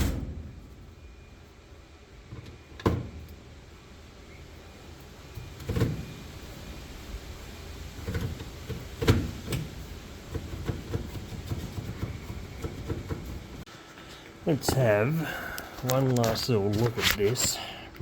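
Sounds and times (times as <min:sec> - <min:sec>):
parts clunking and knocking: 0:02.2 - 0:03.6, 0:05.3 - 0:06.3, 0:07.9 - 0:17.6.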